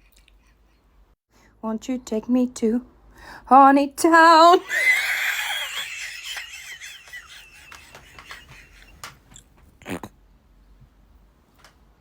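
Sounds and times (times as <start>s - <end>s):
high-pitched wheezing laughter: 4.6s - 9.0s.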